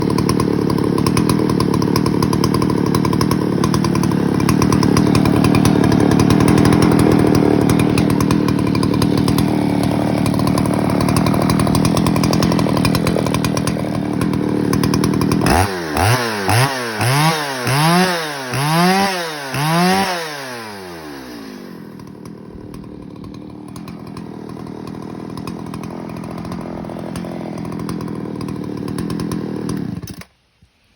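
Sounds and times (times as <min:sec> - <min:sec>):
chainsaw revving and idling: 0:00.0 - 0:30.4.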